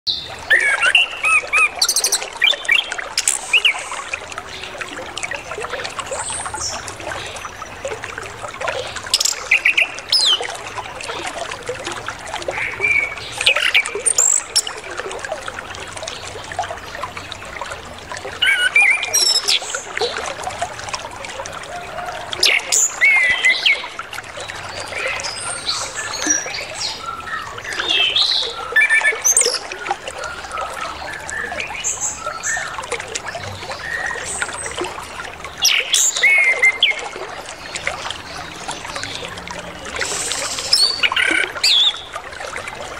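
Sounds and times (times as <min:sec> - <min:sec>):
water trickling: 0:00.1 - 0:42.9
thrush singing whistles and trills: 0:40.0 - 0:42.1.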